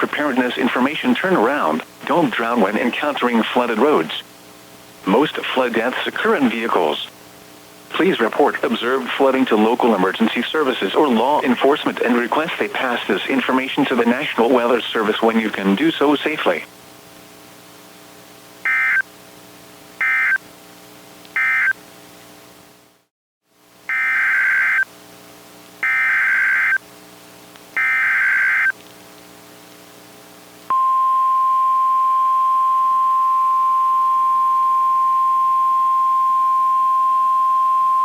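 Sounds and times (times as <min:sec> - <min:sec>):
screechy digital data bursts: 0:23.9 - 0:24.8, 0:25.8 - 0:26.8, 0:27.8 - 0:28.7.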